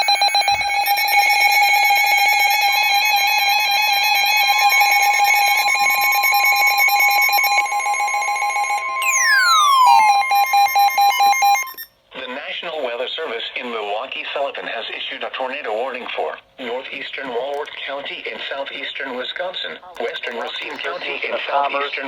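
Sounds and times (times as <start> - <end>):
steady high tone: 0.0 - 11.9
rapidly pulsing alert tone: 4.5 - 11.9
higher tones stepping up and down: 7.3 - 11.9
falling tone sweep: 8.2 - 11.8.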